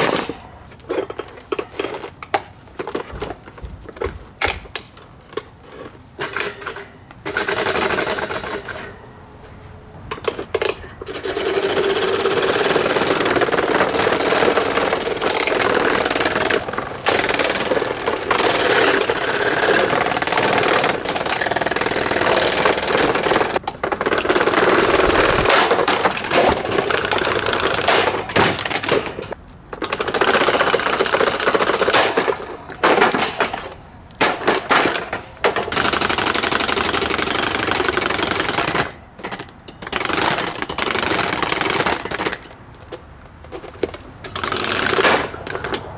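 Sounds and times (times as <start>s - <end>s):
table fan rattling and grinding: 9.9s - 45.9s.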